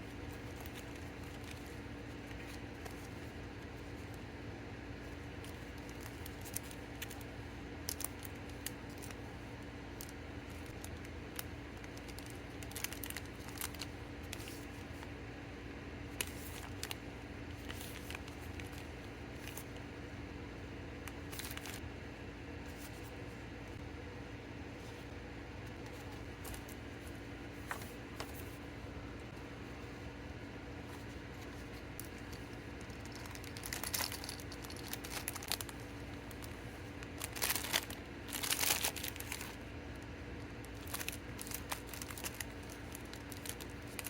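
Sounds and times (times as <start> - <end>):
plastic packaging clicks and crinkles: 10.0 - 14.7, 32.0 - 39.6, 40.6 - 44.0.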